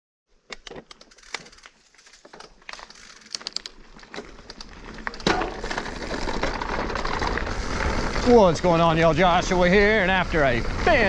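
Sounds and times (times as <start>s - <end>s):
crackles and snaps: 0.5s - 7.5s.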